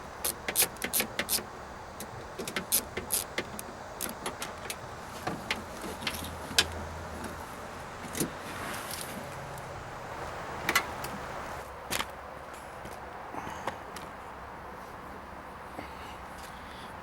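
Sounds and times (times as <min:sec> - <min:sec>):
metallic clicks of hand tool: 0:00.2 - 0:01.4.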